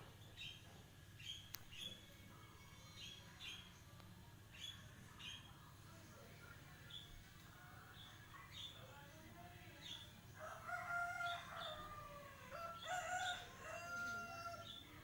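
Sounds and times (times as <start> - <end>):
songbird chirps: 0.0 - 15.0
rooster crowing: 10.4 - 15.0.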